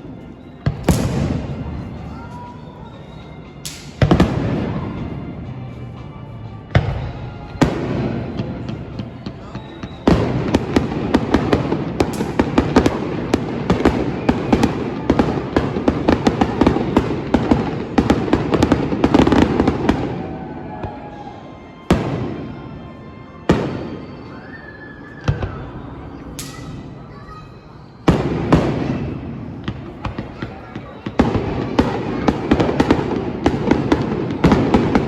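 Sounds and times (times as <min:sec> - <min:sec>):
fireworks bangs and crackling: 0:00.0 - 0:35.0
fireworks booms: 0:00.6 - 0:02.2, 0:03.9 - 0:05.2, 0:06.7 - 0:21.0, 0:25.2 - 0:25.8, 0:28.1 - 0:35.0.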